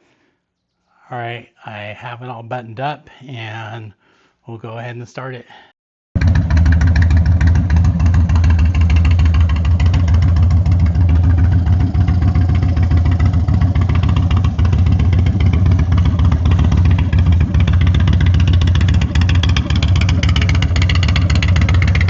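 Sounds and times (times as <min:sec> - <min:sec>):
motorcycle engine idling: 0:06.2 - 0:22.0.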